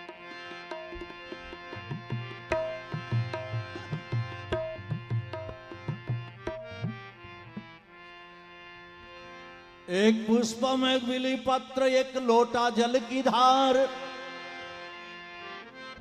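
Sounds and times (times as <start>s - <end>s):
tabla playing a rhythm: 0.0s - 8.0s.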